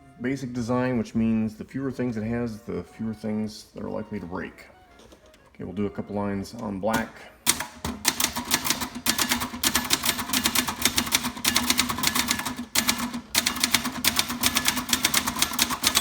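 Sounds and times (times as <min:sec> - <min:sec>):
typewriter keystrokes: 0:06.9 - 0:16.0.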